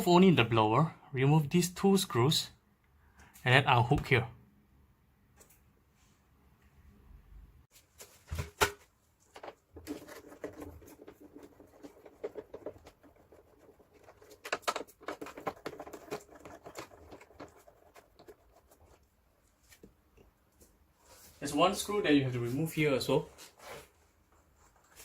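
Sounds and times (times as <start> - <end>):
plastic scraping and rattling: 7.9 - 19.0.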